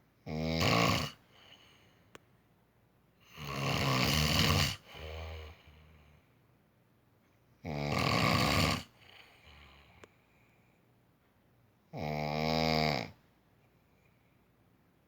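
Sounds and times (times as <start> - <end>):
person snoring: 0.3 - 1.7, 3.2 - 6.0, 7.7 - 10.0, 12.0 - 13.2.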